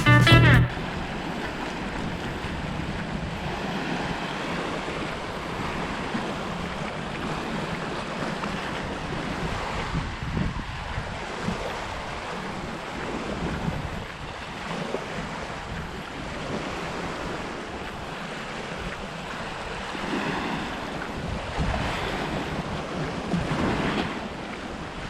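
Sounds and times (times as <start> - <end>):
sea surf on rocky shore: 11.2 - 25.0.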